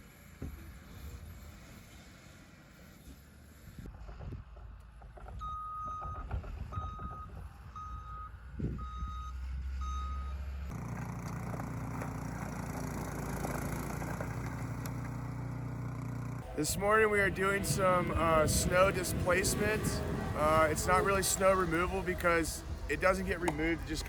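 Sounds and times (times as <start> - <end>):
reversing alarm beeping: 5.4 - 10.5
low engine rumble: 6.6 - 24.0
machine engine with rushing noise: 10.7 - 24.0.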